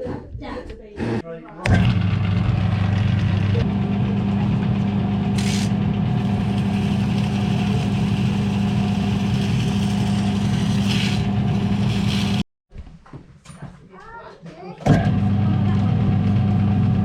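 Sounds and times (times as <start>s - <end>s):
machine motor humming: 1.6s - 12.4s
faint motor whine: 3.2s - 12.4s.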